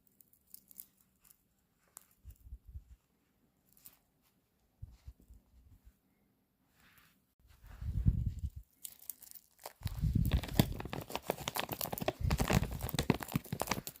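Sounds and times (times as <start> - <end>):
wrapping torn and crinkled: 0.0 - 2.4, 8.5 - 14.0.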